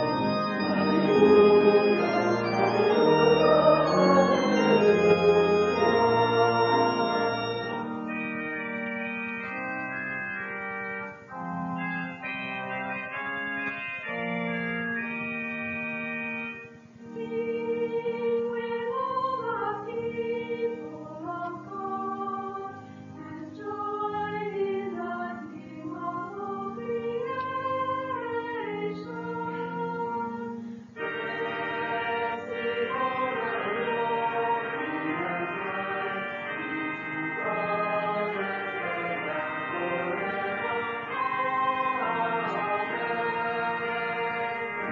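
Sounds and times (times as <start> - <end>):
organ playing held chords: 0.0 - 44.9
person singing: 0.9 - 7.8.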